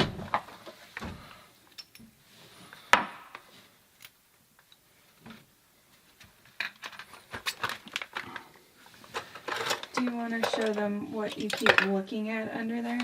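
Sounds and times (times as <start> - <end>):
tools clicking and knocking: 1.7 - 2.1, 9.4 - 12.0.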